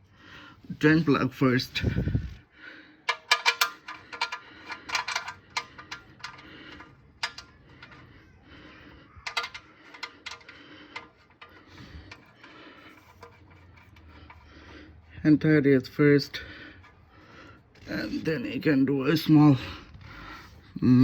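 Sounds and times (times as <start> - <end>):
metallic clinks and taps: 3.1 - 8.0, 9.2 - 14.1.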